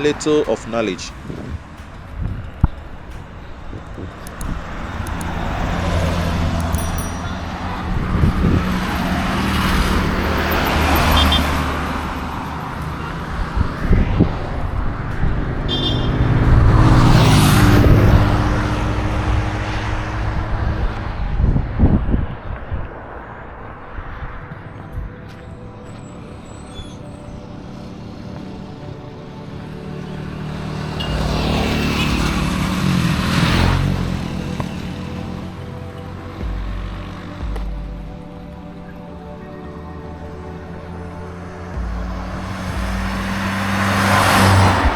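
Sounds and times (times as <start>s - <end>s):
vehicles passing by: 0.0s - 44.9s.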